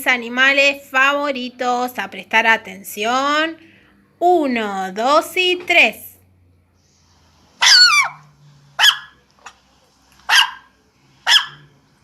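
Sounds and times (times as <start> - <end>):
dog barking: 7.6 - 8.2, 8.8 - 9.2, 10.2 - 11.7.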